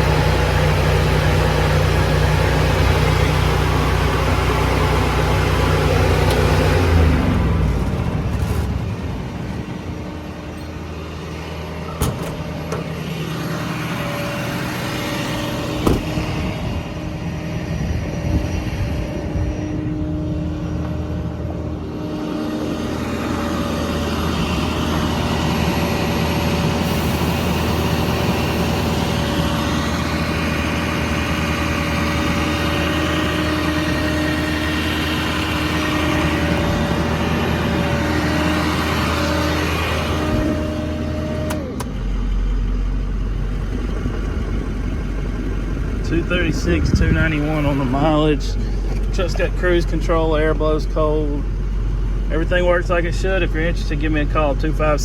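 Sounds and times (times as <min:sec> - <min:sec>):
diesel truck engine idling: 0:00.0 - 0:55.0.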